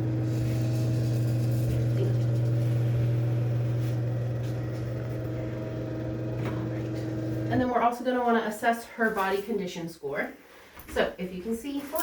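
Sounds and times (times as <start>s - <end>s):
table motor humming: 0.0s - 7.6s.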